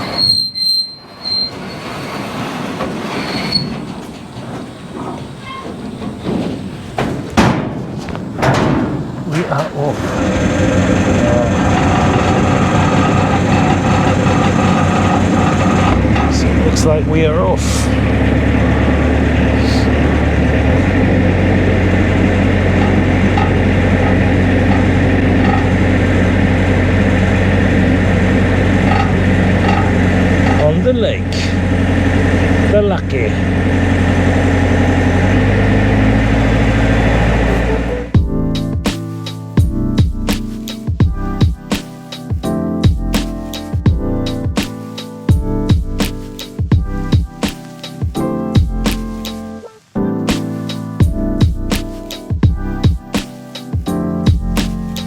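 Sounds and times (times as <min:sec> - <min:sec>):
high-pitched squeal: 0:00.0 - 0:04.1, 0:09.8 - 0:38.2
boat motor running: 0:09.0 - 0:38.9.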